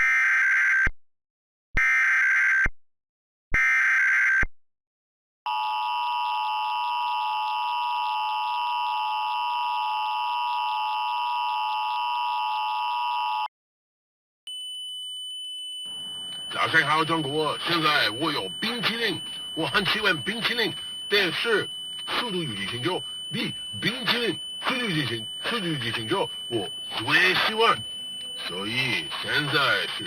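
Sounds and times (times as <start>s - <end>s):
high steady tone: 14.5s - 30.0s
two-tone attention signal: 15.5s - 30.0s
digital header data bursts: 15.9s - 30.0s.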